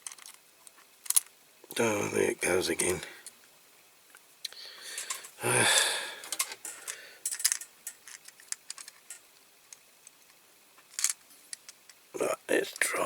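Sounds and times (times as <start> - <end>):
model car parts clicking: 0.0 - 1.4, 6.2 - 12.0.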